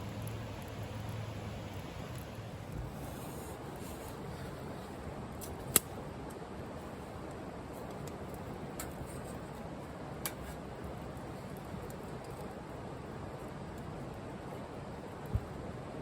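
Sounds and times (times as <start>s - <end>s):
burning wood popping: 0.0s - 3.0s
wood fire hissing: 0.0s - 16.0s.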